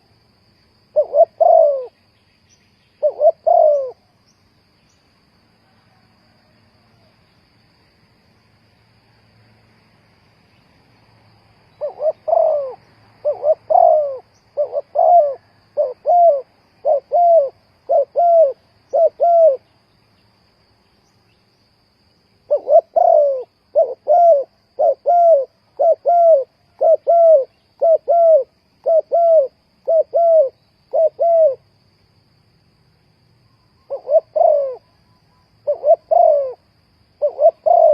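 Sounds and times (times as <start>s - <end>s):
dove cooing: 0.9s - 2.0s, 3.0s - 4.1s, 11.8s - 19.7s, 22.5s - 31.6s, 33.8s - 35.0s, 35.6s - 37.9s.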